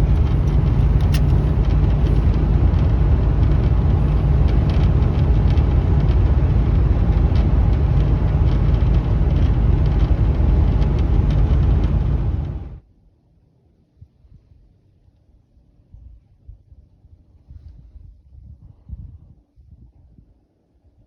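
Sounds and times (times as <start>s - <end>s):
faint ticks and rattles: 0.0s - 12.7s
motor vehicle rumble: 0.0s - 12.8s.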